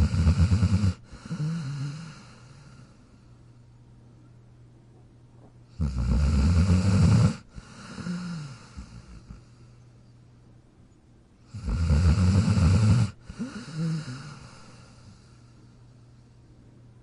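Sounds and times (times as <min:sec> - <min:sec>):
dog snoring: 0:00.0 - 0:03.0, 0:05.7 - 0:09.7, 0:11.5 - 0:15.5.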